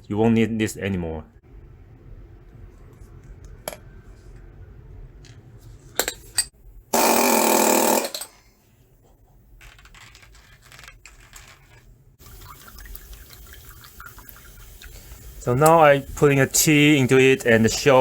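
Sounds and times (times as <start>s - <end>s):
pneumatic air hammer burst: 7.0s - 8.3s
tool clicks: 7.0s - 8.3s.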